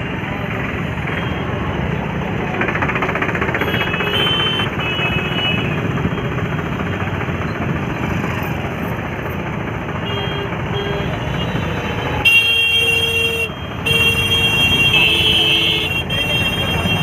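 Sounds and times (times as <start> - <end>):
road traffic: 0.0 - 17.0
car horn: 3.6 - 5.8, 10.0 - 17.0.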